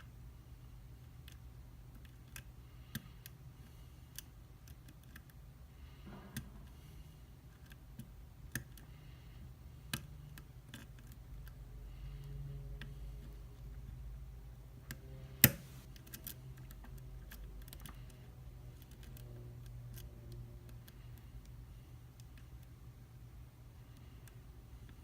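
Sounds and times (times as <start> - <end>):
lock pick clicking and scraping: 1.2 - 5.4, 9.8 - 13.8, 14.9 - 22.7.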